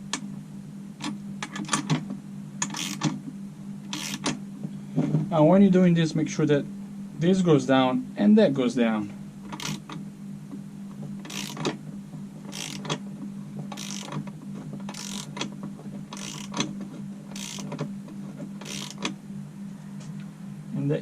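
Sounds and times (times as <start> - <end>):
ratchet wrench clicking: 2.6 - 3.1, 3.9 - 4.3, 9.5 - 9.9, 11.2 - 11.7, 12.5 - 13.0, 13.7 - 14.2, 14.9 - 15.5, 16.1 - 16.7, 17.3 - 17.8, 18.6 - 19.1.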